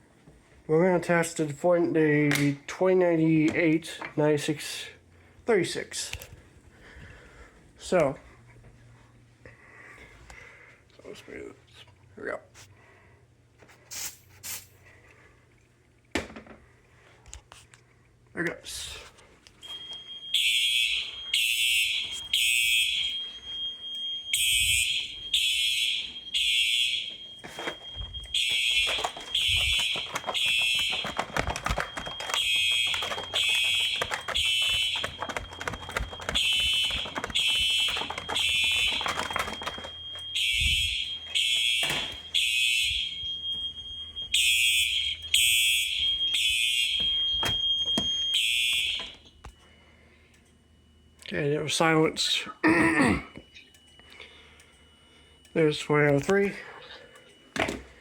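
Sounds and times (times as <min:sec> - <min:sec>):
steady high alarm tone: 0:18.8 - 0:58.0
fire alarm horns blasting: 0:19.6 - 0:58.0.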